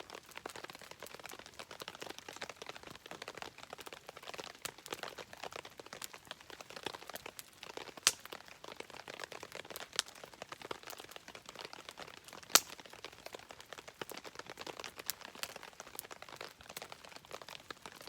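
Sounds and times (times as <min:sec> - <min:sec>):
rain pattering: 0:00.0 - 0:18.0
campfire crackling: 0:00.1 - 0:18.0
loud sharp fire pops: 0:08.0 - 0:08.3, 0:12.6 - 0:12.8.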